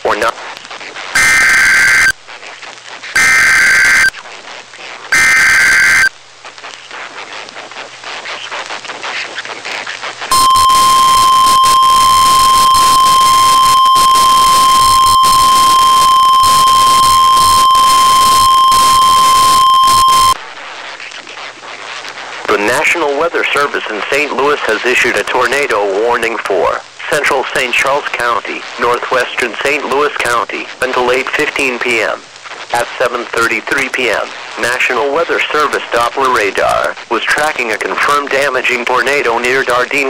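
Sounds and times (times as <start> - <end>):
radio hiss: 0.0 - 40.0
raspy digital header bursts: 10.3 - 20.4
steady high warning tone: 10.3 - 20.4.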